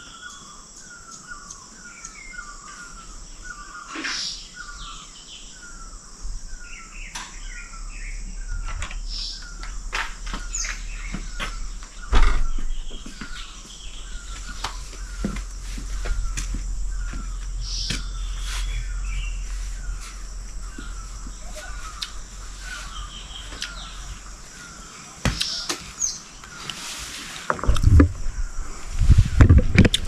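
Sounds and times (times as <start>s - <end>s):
low rumbles on microphone: 6.1s - 24.8s, 27.5s - 30.0s.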